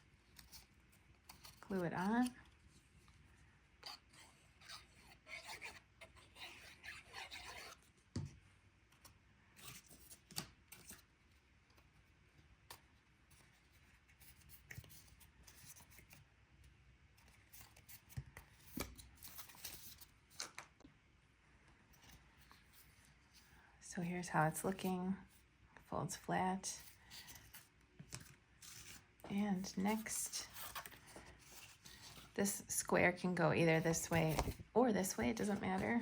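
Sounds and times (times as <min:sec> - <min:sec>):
cardstock rubbing and rustling: 0:03.8 - 0:07.9, 0:26.8 - 0:32.4, 0:33.6 - 0:36.0.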